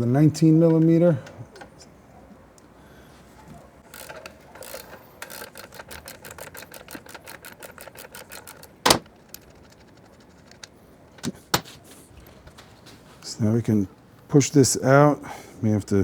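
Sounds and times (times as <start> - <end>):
socket ratchet clicking rapidly: 3.9 - 11.3.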